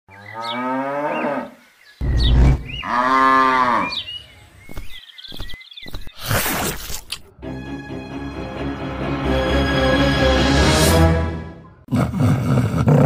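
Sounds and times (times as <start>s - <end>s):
cattle mooing: 2.8s - 4.0s.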